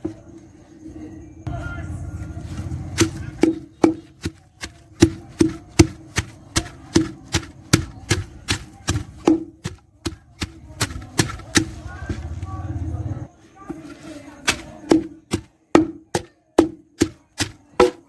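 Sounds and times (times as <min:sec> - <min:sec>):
pestle pounding in mortar: 0:02.9 - 0:12.4, 0:13.8 - 0:18.0.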